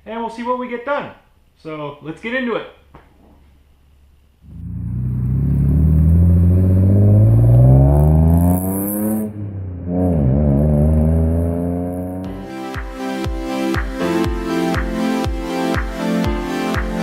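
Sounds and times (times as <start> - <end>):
car engine accelerating: 4.4 - 12.4
music: 12.3 - 17.0.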